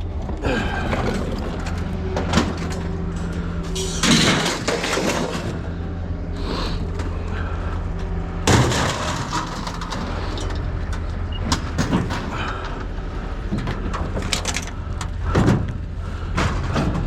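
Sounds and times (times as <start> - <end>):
vehicle engine idling: 0.0 - 17.0
loud crashing and clattering: 0.1 - 6.1, 8.4 - 10.7, 11.5 - 14.7, 15.3 - 17.0.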